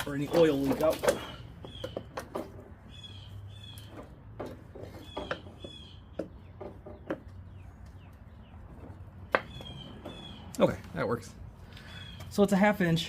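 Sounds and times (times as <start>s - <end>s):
knocks handling a lawn mower: 0.0s - 2.9s
bird chirps: 1.1s - 2.2s, 2.9s - 4.1s, 4.9s - 10.8s, 11.7s - 12.4s.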